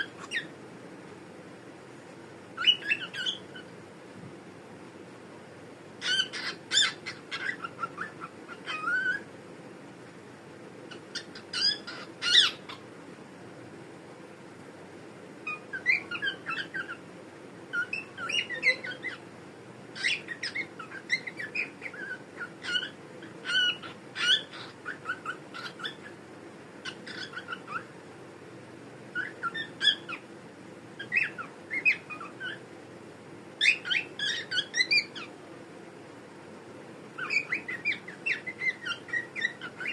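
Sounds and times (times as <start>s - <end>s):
cockatiel chirping and whistling: 0.0s - 0.5s, 2.6s - 3.6s, 6.0s - 9.2s, 10.9s - 12.8s, 15.4s - 17.0s, 17.7s - 19.2s, 20.0s - 26.1s, 26.8s - 27.9s, 29.1s - 30.2s, 31.0s - 32.6s, 33.6s - 35.3s, 37.2s - 39.9s.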